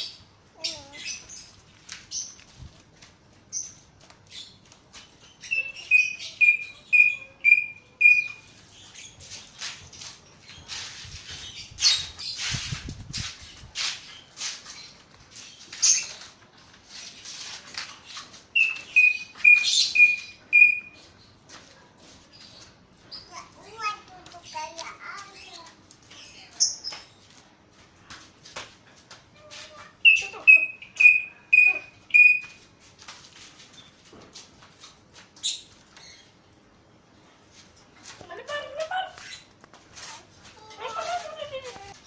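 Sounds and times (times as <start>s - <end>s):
scratchy rustling and crackling: 9.1s - 18.6s.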